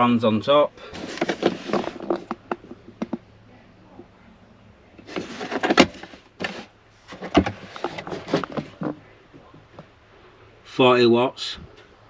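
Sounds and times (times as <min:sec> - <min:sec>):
faint low hum: 0:00.0 - 0:12.0
handling knocks and clicks: 0:01.0 - 0:03.2, 0:05.0 - 0:09.9.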